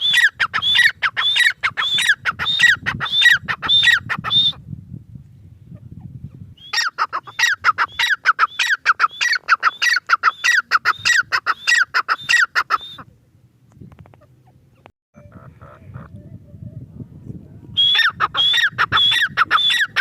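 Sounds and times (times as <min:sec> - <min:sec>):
francolin calling: 0:00.0 - 0:04.6, 0:17.8 - 0:20.0.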